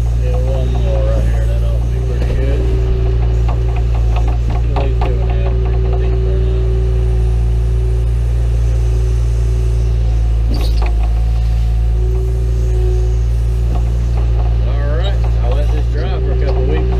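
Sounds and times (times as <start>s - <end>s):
backhoe diesel engine running: 0.0s - 16.9s.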